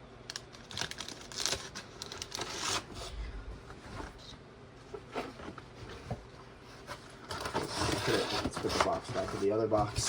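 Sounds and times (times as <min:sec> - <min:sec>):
packaging crinkling and rustling: 0:00.3 - 0:03.1.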